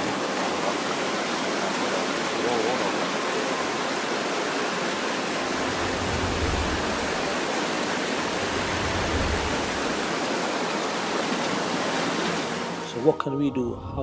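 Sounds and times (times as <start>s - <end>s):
floodwater rushing: 0.0s - 13.2s
low rumble: 5.6s - 10.0s.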